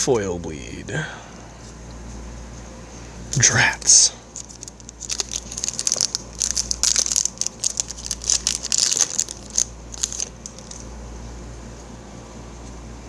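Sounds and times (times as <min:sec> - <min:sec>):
foil wrapper crinkling and tearing: 0:03.4 - 0:10.9.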